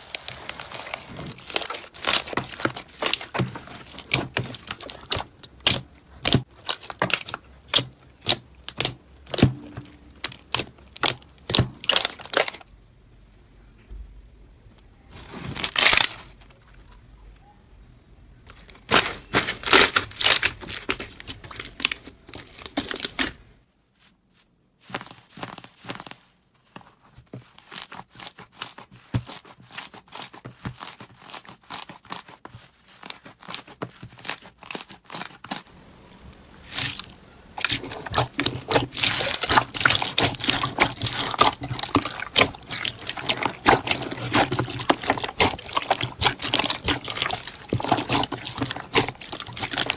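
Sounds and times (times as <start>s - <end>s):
slime crackling and popping: 0.0s - 12.6s, 15.6s - 16.3s, 18.8s - 23.3s, 33.2s - 49.9s.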